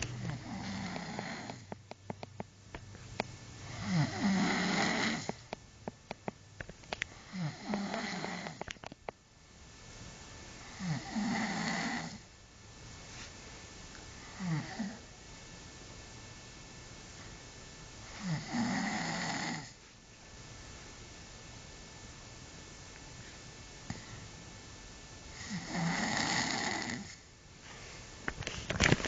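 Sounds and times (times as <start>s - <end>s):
man snoring: 0.2s - 1.8s, 3.6s - 5.4s, 7.1s - 8.6s, 10.6s - 12.2s, 14.2s - 15.0s, 18.1s - 19.8s, 25.4s - 27.2s.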